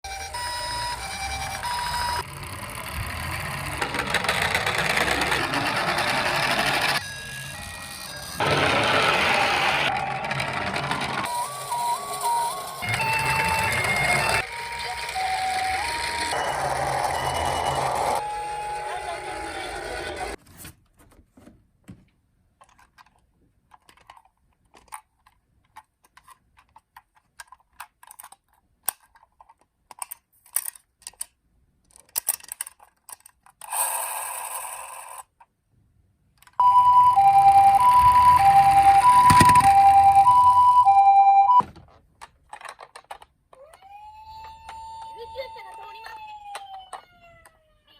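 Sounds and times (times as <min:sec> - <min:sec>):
toy two-tone siren: 0:00.0 - 0:02.3, 0:04.3 - 0:20.4, 0:36.6 - 0:41.6, 0:43.6 - 0:47.9
toy clicks: 0:02.0 - 0:08.4, 0:22.6 - 0:35.5.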